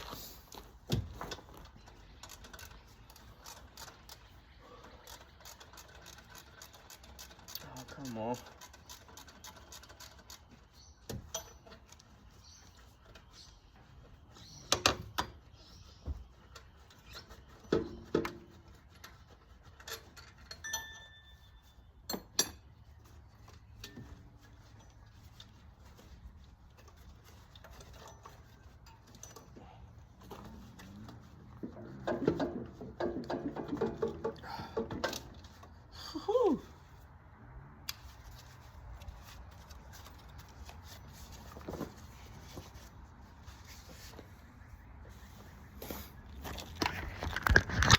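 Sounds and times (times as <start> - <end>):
light clinks and knocks: 4.9 - 13.5, 16.1 - 35.8.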